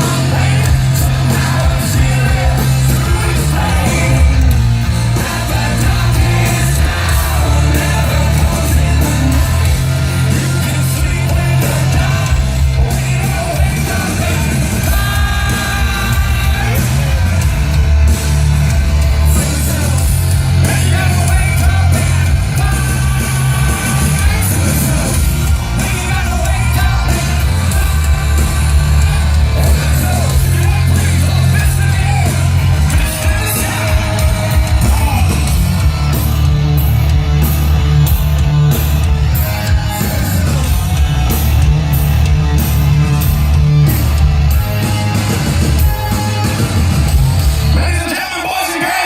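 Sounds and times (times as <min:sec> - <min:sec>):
hard rock band playing live: 0:00.0 - 0:49.0
singer shouting: 0:19.3 - 0:35.8, 0:47.6 - 0:49.0.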